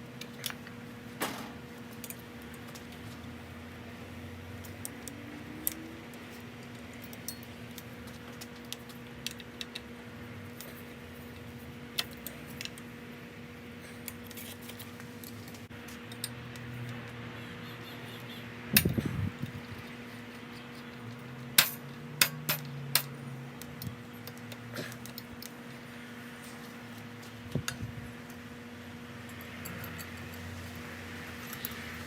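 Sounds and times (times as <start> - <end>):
metallic clinks of tools: 29.3 - 30.5.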